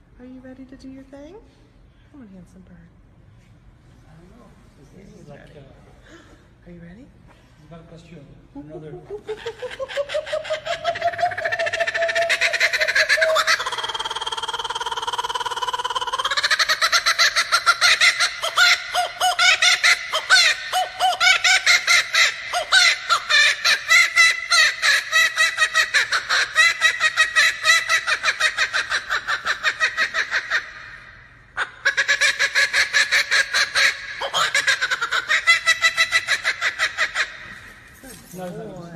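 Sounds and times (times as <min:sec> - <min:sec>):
kookaburra laughing call: 0:08.7 - 0:38.2.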